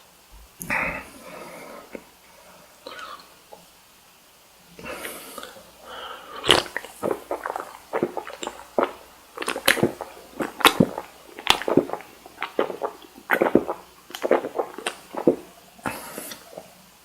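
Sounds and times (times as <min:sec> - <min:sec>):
chewing with wet smacks: 0:06.4 - 0:15.6.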